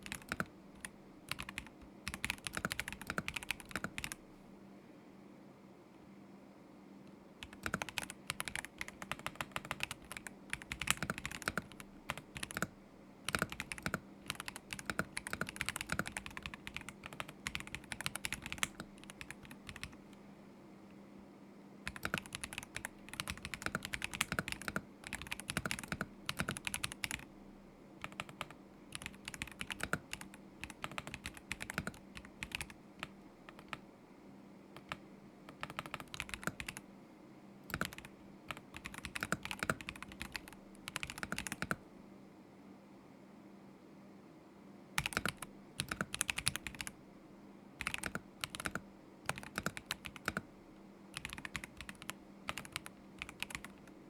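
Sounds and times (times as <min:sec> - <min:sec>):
mechanical keyboard typing: 0:00.0 - 0:04.2, 0:07.4 - 0:20.0, 0:21.9 - 0:27.3, 0:28.0 - 0:33.8, 0:34.8 - 0:36.8, 0:37.7 - 0:41.8, 0:45.0 - 0:46.9, 0:47.8 - 0:50.5, 0:51.2 - 0:54.0.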